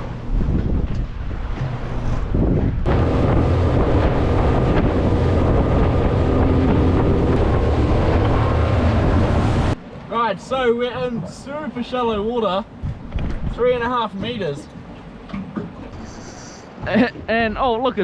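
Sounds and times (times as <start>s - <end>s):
wind noise on microphone: 0.0s - 9.8s, 12.7s - 13.7s
outboard motor drone: 0.0s - 10.1s.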